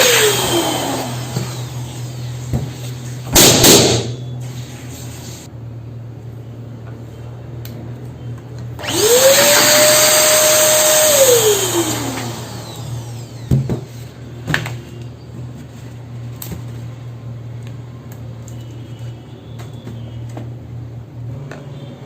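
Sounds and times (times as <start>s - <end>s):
electric balloon pump motor whine: 0.0s - 2.8s, 8.8s - 13.9s.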